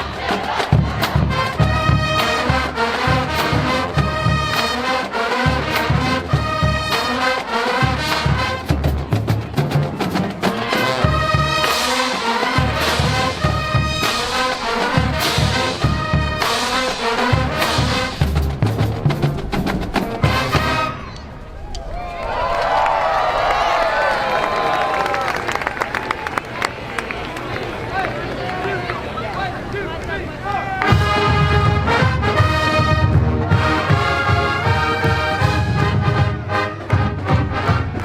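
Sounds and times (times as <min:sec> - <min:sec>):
marching band playing: 0:00.0 - 0:21.6, 0:23.5 - 0:38.0
trumpets and trombones: 0:00.0 - 0:21.6, 0:30.6 - 0:38.0
bass drums and drumline: 0:00.0 - 0:25.4, 0:29.5 - 0:38.0.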